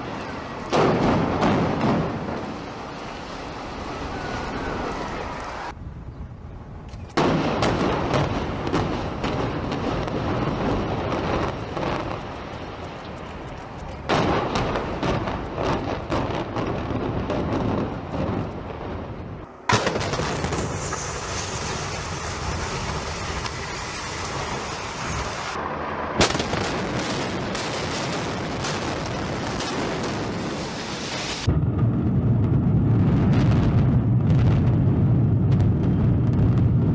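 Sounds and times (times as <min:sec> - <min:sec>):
rumble of collapsing building: 0:31.4 - 0:36.9.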